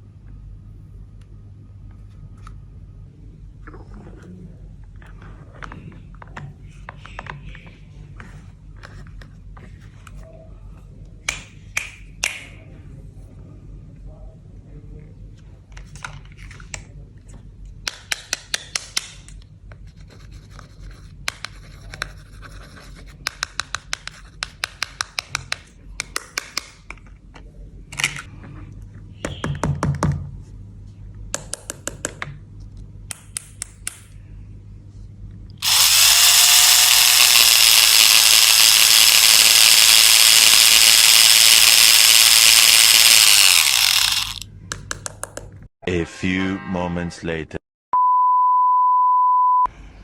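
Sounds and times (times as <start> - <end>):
plastic toy pieces clicking: 35.6 - 44.4
loud steady whirring: 35.6 - 44.5.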